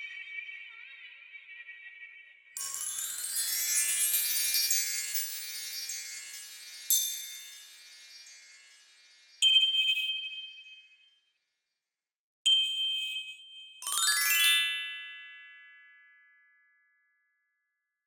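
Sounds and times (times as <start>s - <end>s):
descending cascade of chimes: 2.6s - 10.1s, 13.8s - 14.7s
shimmering chime ding: 2.6s - 10.7s.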